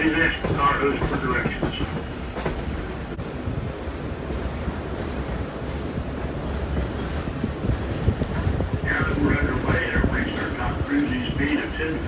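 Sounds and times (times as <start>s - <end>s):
train running gear rumble: 0.0s - 12.0s
high-pitched wheel squeal: 4.1s - 9.2s.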